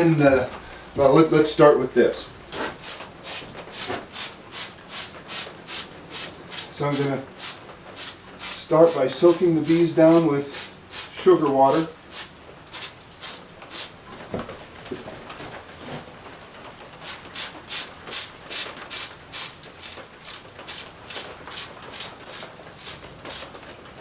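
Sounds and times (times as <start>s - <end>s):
spray bottle hissing: 2.8s - 9.8s, 10.5s - 11.1s, 12.1s - 13.9s.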